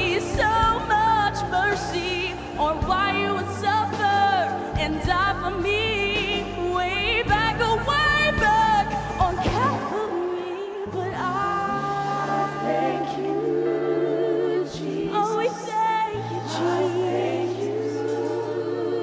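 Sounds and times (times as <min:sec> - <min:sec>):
steady bass: 0:00.0 - 0:10.1
live band playing: 0:00.0 - 0:14.0
gospel group singing: 0:00.0 - 0:19.0.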